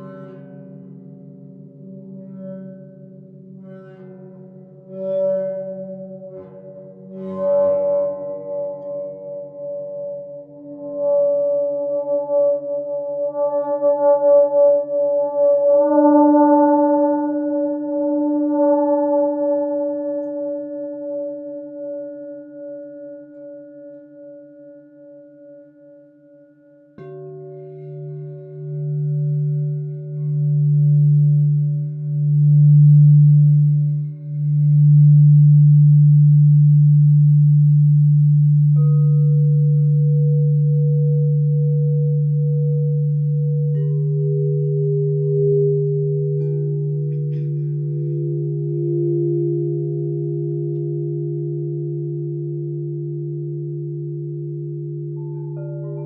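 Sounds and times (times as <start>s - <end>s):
singing bowls ringing: 26.4s - 56.0s.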